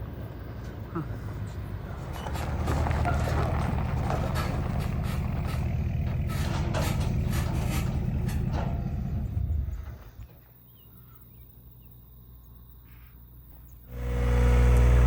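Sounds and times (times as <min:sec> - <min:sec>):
large vehicle engine running: 0:00.0 - 0:10.3, 0:13.9 - 0:15.0
knocks and rattles: 0:02.0 - 0:10.2
faint bird chirps: 0:09.4 - 0:13.9.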